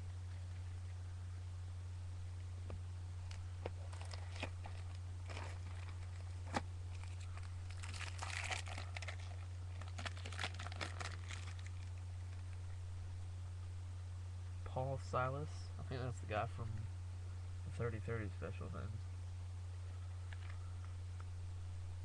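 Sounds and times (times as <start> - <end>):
steady low hum: 0.0 - 22.0
cards and wrappers handled: 3.2 - 12.6, 20.3 - 20.7.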